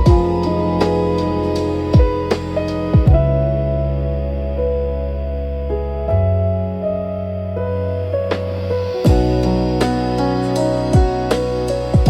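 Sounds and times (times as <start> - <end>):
soft drum hit: 0.0 - 1.0, 3.0 - 3.3, 8.3 - 10.0
lofi jazz keyboard chords: 0.0 - 12.0
warm bass: 0.0 - 12.0.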